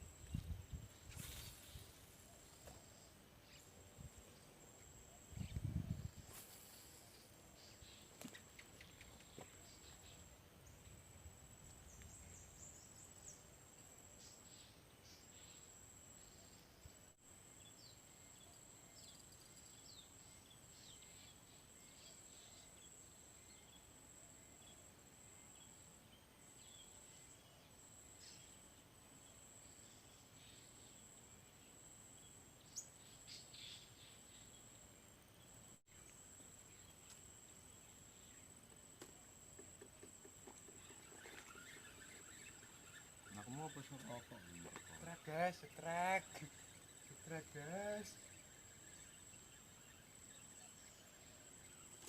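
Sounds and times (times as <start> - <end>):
high-pitched insect whine: 0.0 - 8.4, 35.9 - 52.0
faint insect or bird chirps: 0.0 - 52.0.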